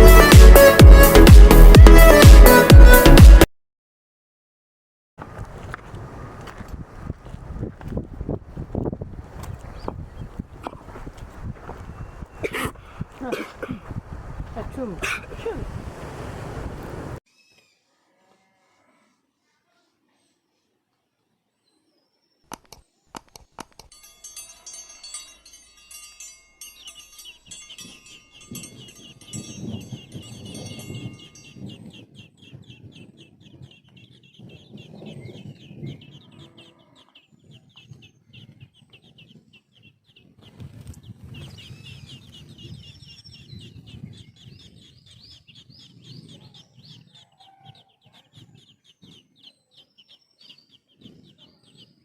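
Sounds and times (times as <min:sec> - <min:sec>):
young birds peeping: 0:05.6 - 0:14.0, 0:22.5 - 0:52.0
birds clucking chatter: 0:09.4 - 0:14.0, 0:22.5 - 0:52.0.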